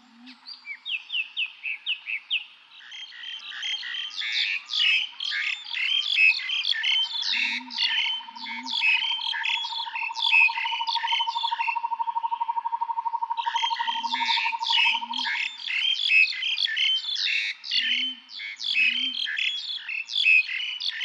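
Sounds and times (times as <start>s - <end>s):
songbirds singing: 0.0s - 21.0s.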